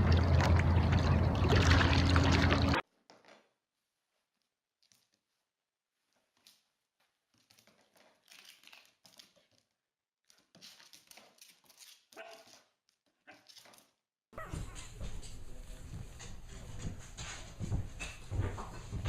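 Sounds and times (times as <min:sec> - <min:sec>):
dog whine: 0:14.4 - 0:14.8
faint dog noises: 0:14.4 - 0:15.9.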